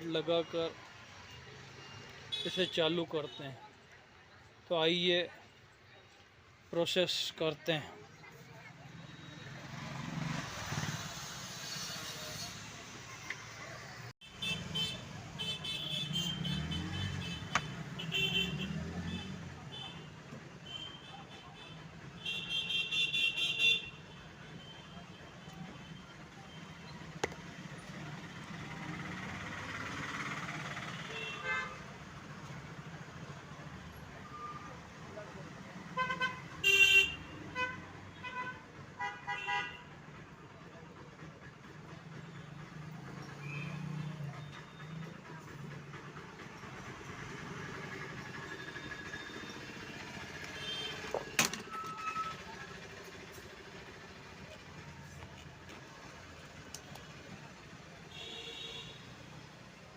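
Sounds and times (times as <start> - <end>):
road traffic passing: 0.0 - 59.9
vehicle horn toot: 50.5 - 52.4, 58.1 - 59.0
short tone: 51.6 - 52.5.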